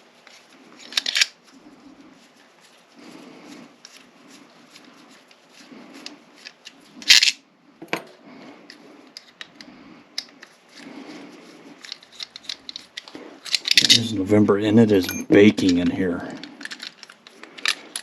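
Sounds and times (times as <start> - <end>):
metal tools clicking and clinking: 15.0 - 15.7.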